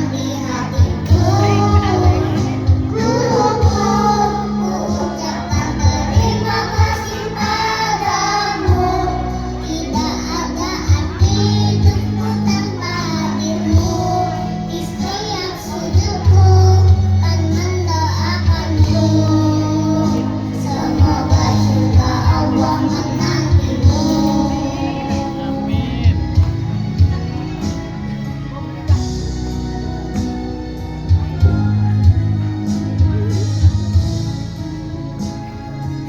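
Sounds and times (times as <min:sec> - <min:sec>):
children's choir singing: 0:00.0 - 0:29.2
music with bass and beat: 0:18.2 - 0:36.0.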